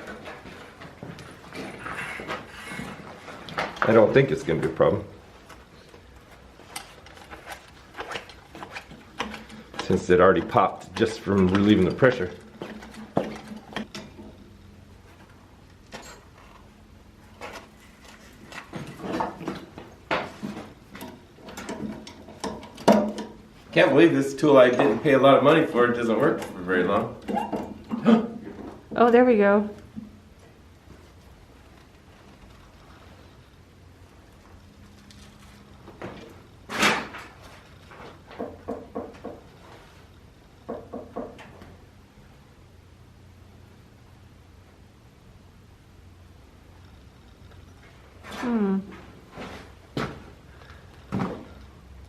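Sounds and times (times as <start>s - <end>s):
knocks and clanks on metal boiler: 18.7s - 23.4s, 38.3s - 39.5s, 40.6s - 41.6s.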